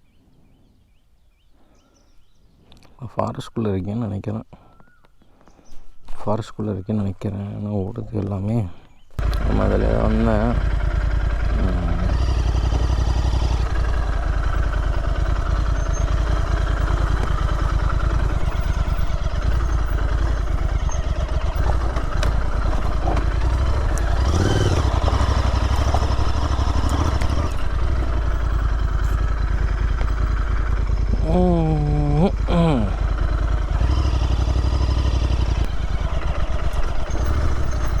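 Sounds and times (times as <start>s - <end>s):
motorcycle engine running: 9.2s - 38.0s.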